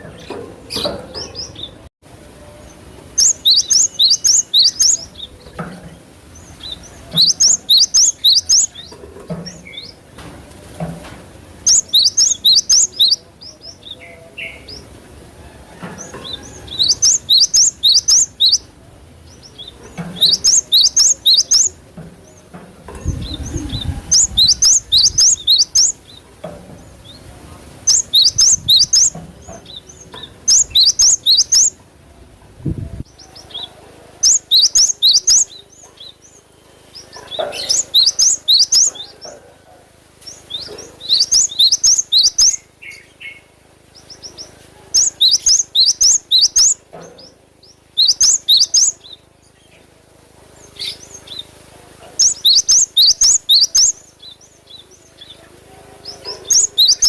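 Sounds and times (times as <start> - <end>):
bird singing high chirps: 2.5 - 5.7, 6.3 - 10.0, 11.6 - 14.9, 16.7 - 18.7, 19.4 - 21.8, 23.0 - 26.2, 27.1 - 31.8, 33.1 - 39.1, 40.4 - 46.8, 47.7 - 49.8, 52.2 - 55.4, 56.1 - 57.0.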